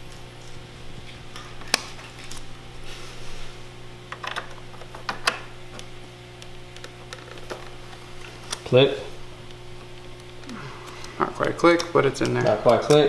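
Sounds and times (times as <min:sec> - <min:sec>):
low hum: 0:00.0 - 0:12.4
memory sticks clicking into slots: 0:10.2 - 0:13.0.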